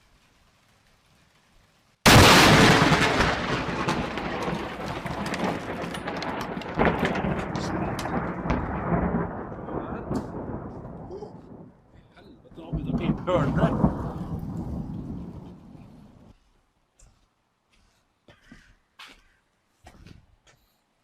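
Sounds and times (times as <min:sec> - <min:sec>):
loud thunderclap: 0:02.1 - 0:11.8, 0:12.5 - 0:16.3
rumbling roll of thunder: 0:02.1 - 0:16.3.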